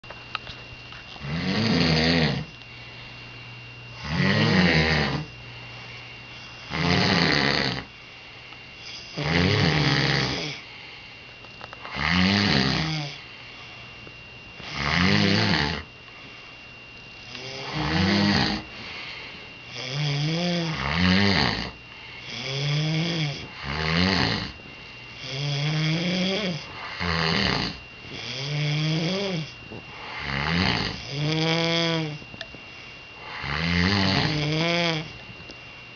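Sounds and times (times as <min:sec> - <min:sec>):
loud snoring: 0:01.2 - 0:02.5, 0:04.0 - 0:05.3, 0:06.7 - 0:07.9, 0:08.8 - 0:10.6, 0:11.8 - 0:13.2, 0:14.6 - 0:15.9, 0:17.3 - 0:18.7, 0:19.7 - 0:24.6, 0:25.2 - 0:32.2, 0:33.2 - 0:35.2.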